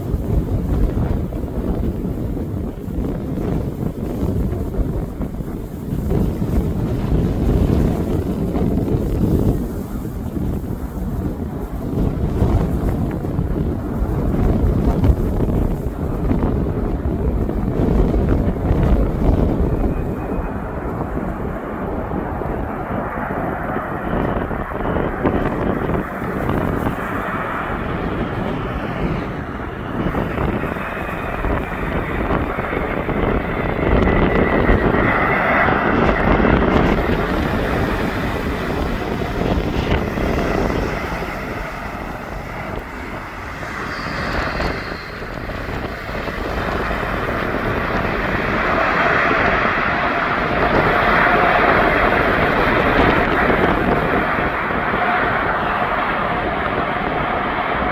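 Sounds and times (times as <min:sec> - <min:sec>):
jet engines roaring: 0:00.0 - 0:57.9
steady whine: 0:00.0 - 0:57.9
wind buffeting microphone: 0:00.0 - 0:57.9.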